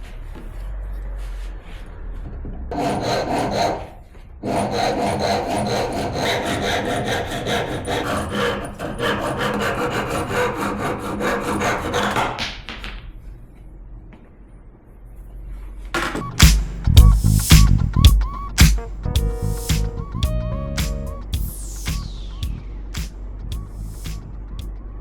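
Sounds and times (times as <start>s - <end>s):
wood lathe scraping wood: 2.7s - 12.4s
music: 16.2s - 24.3s.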